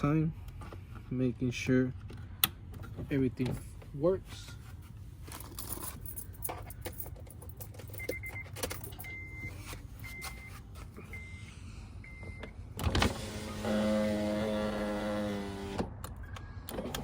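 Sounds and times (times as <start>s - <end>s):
power window motor humming: 12.8s - 16.0s.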